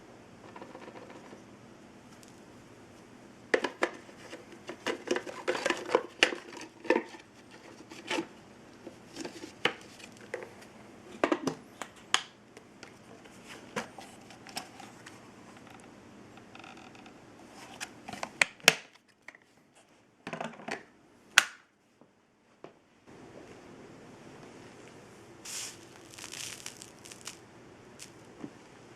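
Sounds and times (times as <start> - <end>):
hard objects clicking and knocking: 3.6 - 7.2.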